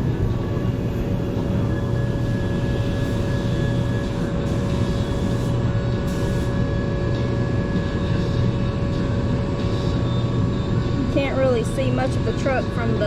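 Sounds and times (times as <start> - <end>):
machinery droning: 0.0 - 13.0
spray gun air hisses: 6.1 - 6.5.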